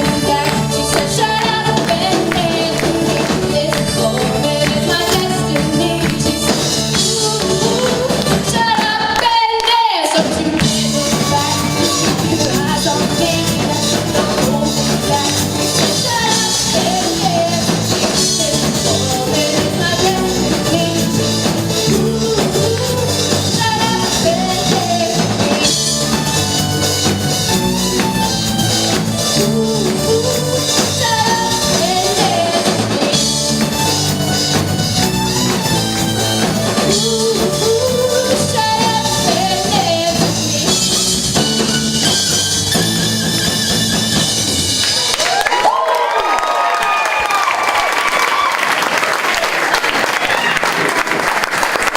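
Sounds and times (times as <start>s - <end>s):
person singing: 0.0s - 26.4s, 28.7s - 34.1s, 36.5s - 41.5s
drum kit: 0.0s - 49.1s
rock band playing: 0.0s - 51.9s.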